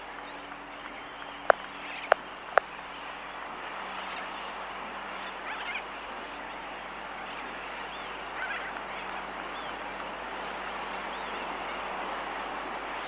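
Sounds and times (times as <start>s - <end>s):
distant terns chattering: 0.0s - 5.9s.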